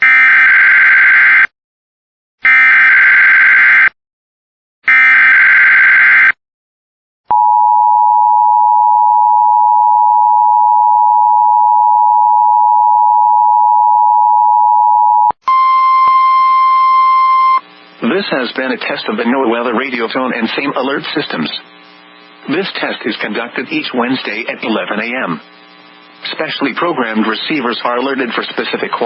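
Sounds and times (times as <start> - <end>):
steady high alarm tone: 4.9 - 6.3, 7.3 - 17.8.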